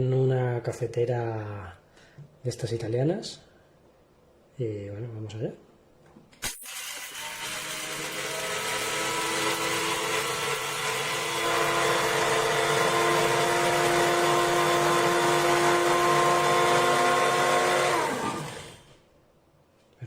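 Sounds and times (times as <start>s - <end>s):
coffee grinder whirring: 6.5s - 19.0s.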